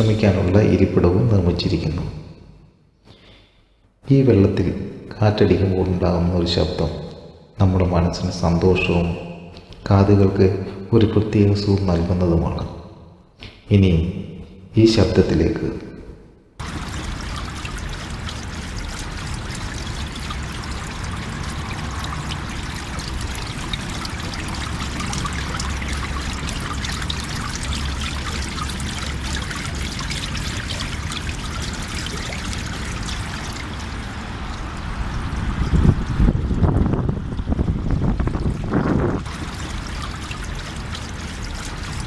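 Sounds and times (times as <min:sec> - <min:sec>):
water trickling in pool: 0:00.0 - 0:01.0, 0:05.8 - 0:13.3, 0:16.6 - 0:42.0
wind rumble on microphone: 0:33.7 - 0:39.5.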